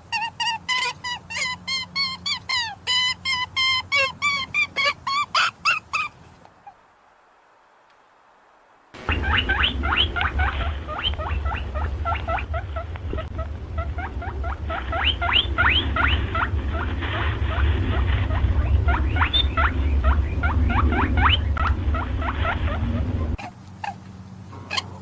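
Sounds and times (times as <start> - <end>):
rabbit squeaking: 0.0 - 6.8, 9.0 - 24.0, 24.6 - 25.0
low rumble: 9.0 - 23.4.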